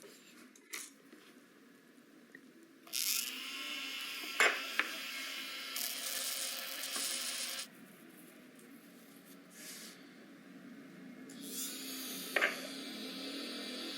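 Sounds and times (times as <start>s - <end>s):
small electric motor running: 2.9s - 7.7s, 11.3s - 13.9s.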